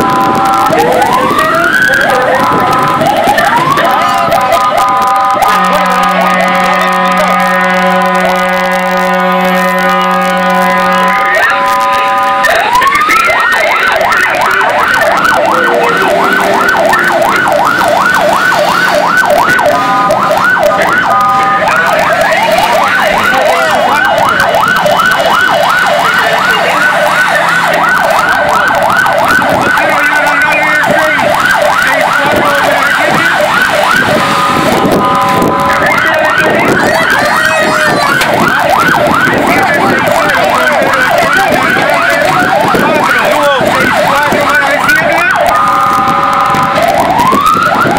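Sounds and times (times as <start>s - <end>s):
horn blasts: 0.0s - 1.2s, 2.0s - 12.9s, 13.8s - 24.8s, 31.9s - 38.3s, 45.3s - 47.0s
fire engine siren yelp: 0.0s - 47.9s.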